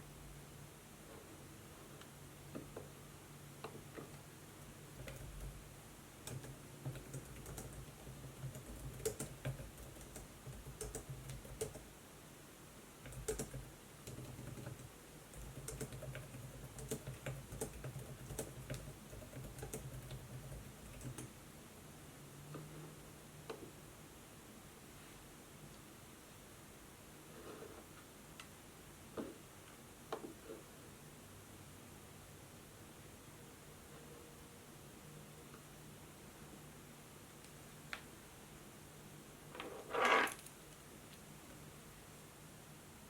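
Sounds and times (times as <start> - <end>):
laptop keyboard typing: 4.9 - 5.6, 6.2 - 11.9, 13.0 - 21.4.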